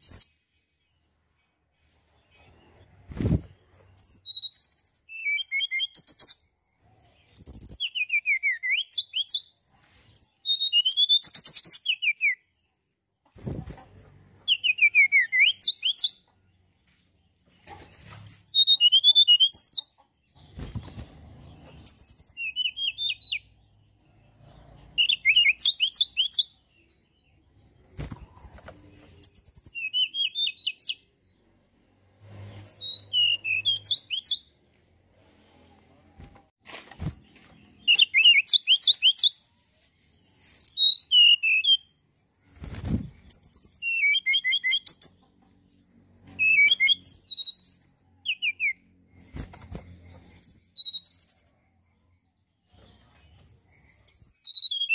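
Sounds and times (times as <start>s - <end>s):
songbird whistled notes: 10.2s - 12.4s, 32.6s - 34.4s, 37.2s - 39.4s, 50.3s - 51.6s, 54.0s - 54.9s.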